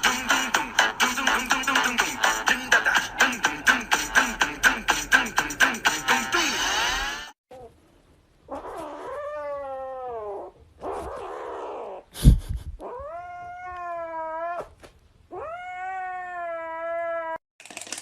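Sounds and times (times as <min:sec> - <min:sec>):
cat yowling: 0:08.5 - 0:12.0, 0:12.8 - 0:17.4.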